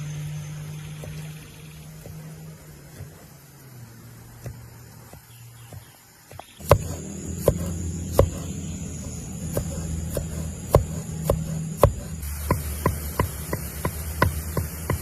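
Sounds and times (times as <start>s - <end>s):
steady low hum: 0.0s - 15.0s
sharp knocks: 4.4s - 15.0s.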